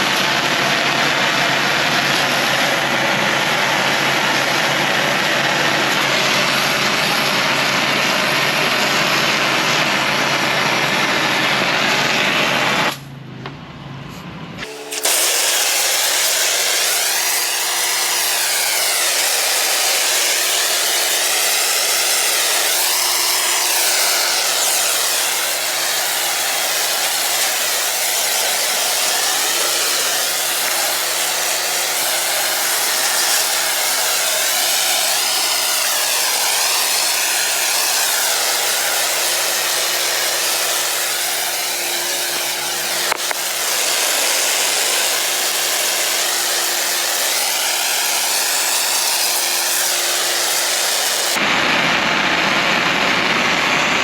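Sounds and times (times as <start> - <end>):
pressure washer spraying water: 0.0 - 12.9, 14.6 - 51.4.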